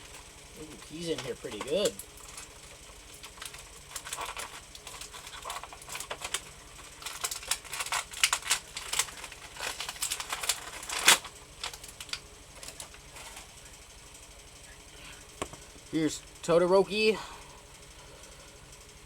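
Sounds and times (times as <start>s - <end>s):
plastic packaging crackling: 0.0s - 13.7s
plastic snapping: 7.0s - 13.0s.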